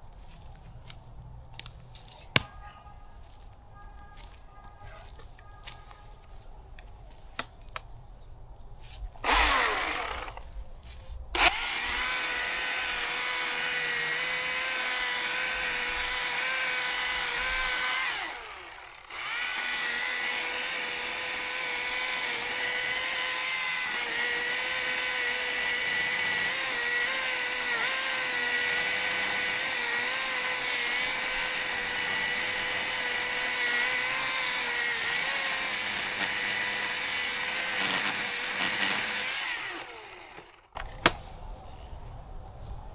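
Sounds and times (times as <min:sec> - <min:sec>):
chainsaw cutting into tree trunk: 0:09.2 - 0:10.6, 0:11.4 - 0:41.2.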